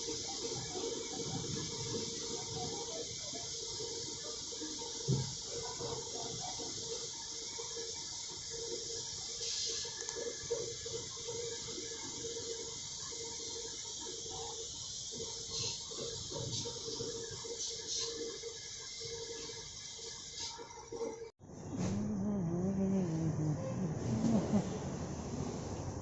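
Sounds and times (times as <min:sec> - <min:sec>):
spraying hiss: 0:00.0 - 0:20.6.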